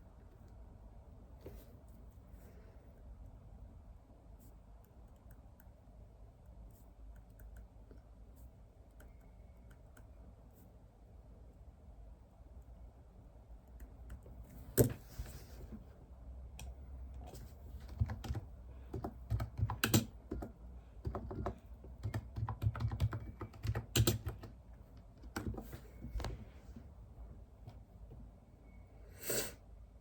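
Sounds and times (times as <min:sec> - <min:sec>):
computer keyboard typing: 0:17.7 - 0:25.8.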